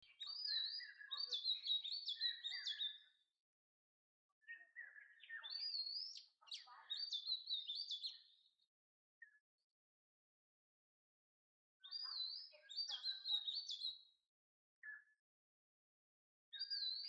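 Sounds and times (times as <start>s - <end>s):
songbird singing: 0.0s - 3.3s, 4.4s - 9.5s, 11.8s - 14.2s, 16.5s - 17.0s.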